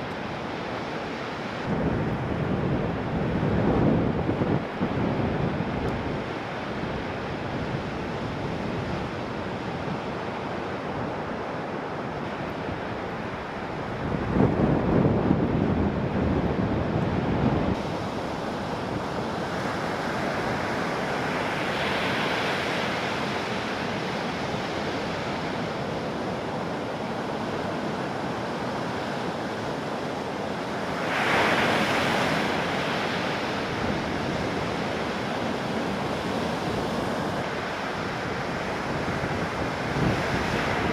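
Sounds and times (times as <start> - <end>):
wind on microphone: 0.0 - 40.9
waves breaking: 17.7 - 40.9.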